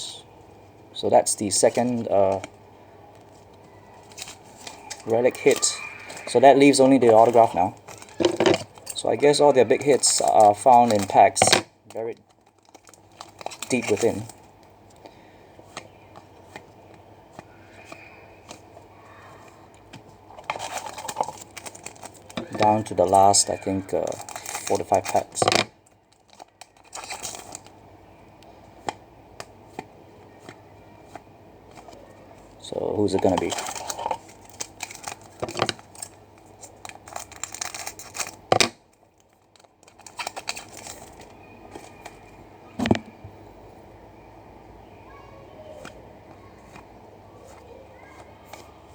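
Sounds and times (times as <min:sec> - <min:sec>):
trading cards being handled: 0:01.2 - 0:15.0, 0:19.4 - 0:27.8, 0:28.8 - 0:38.7, 0:39.3 - 0:43.2
wrapper crinkling: 0:03.1 - 0:11.6, 0:12.2 - 0:15.0, 0:19.8 - 0:27.8, 0:30.4 - 0:42.3
wrapper tearing: 0:04.0 - 0:11.2, 0:12.3 - 0:14.4, 0:20.4 - 0:25.5, 0:26.2 - 0:27.7, 0:33.1 - 0:38.7, 0:39.5 - 0:42.2.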